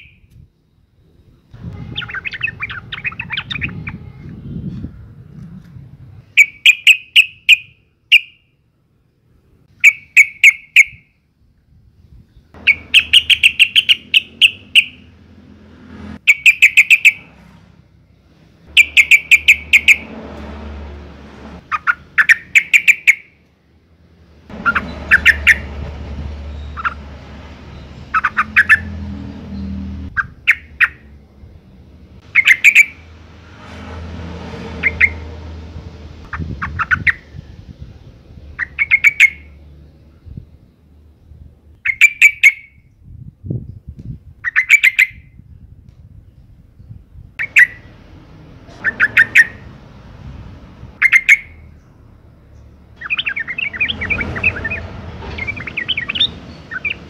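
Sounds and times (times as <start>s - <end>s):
bulbul calling: 1.8s - 4.1s, 6.4s - 8.5s, 9.7s - 11.2s, 12.6s - 15.5s, 16.2s - 17.3s, 18.7s - 20.2s, 21.6s - 23.4s, 24.5s - 25.7s, 27.7s - 29.0s, 30.1s - 31.2s, 32.2s - 33.1s, 34.8s - 35.2s, 38.6s - 39.6s, 41.8s - 42.9s, 44.4s - 45.3s, 47.4s - 48.0s, 48.7s - 49.7s, 51.0s - 57.0s.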